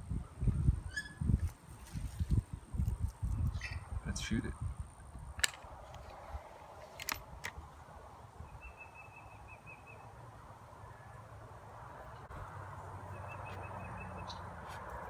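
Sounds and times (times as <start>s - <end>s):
bird trill of high chirps: 8.4s - 10.1s.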